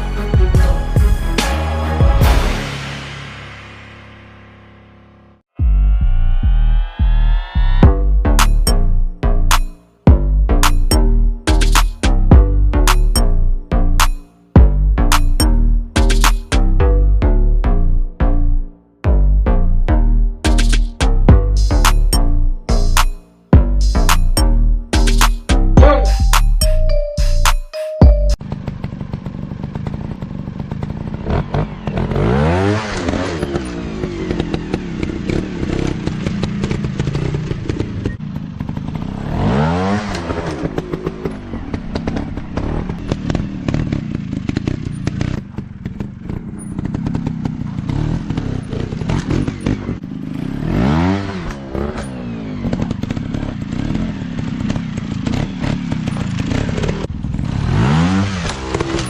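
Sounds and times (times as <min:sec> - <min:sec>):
motorcycle engines revving: 0:28.4 - 0:59.0.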